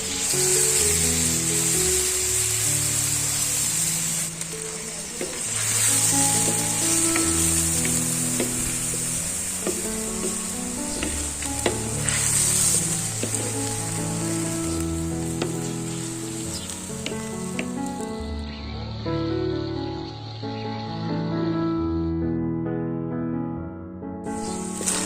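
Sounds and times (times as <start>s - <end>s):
food sizzling in a pan: 0.0s - 21.2s, 24.3s - 25.0s
utensil clicking stirring: 5.2s - 14.4s.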